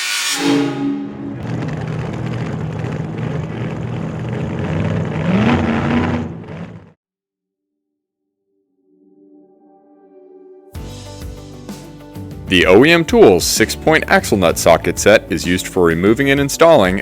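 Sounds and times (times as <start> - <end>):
car engine running and revving: 1.3 - 7.0.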